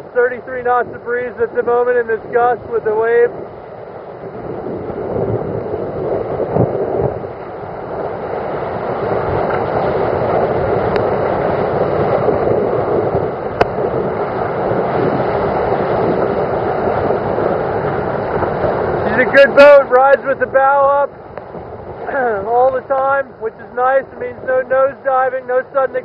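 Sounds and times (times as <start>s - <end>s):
water rushing past hull: 0.0s - 26.0s
wind buffeting microphone: 0.0s - 26.0s.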